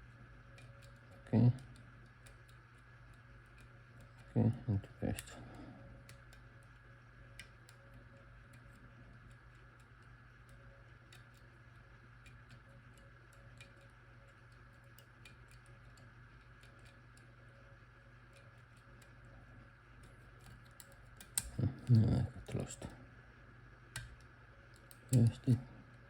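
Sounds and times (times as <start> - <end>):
steady low hum: 0.0 - 26.0
small clicks of lock pick: 20.0 - 21.6.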